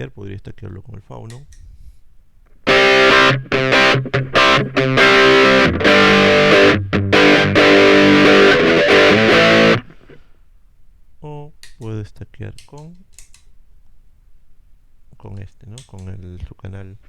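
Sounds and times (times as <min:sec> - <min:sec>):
distorted electric guitar chords: 0:02.6 - 0:10.2.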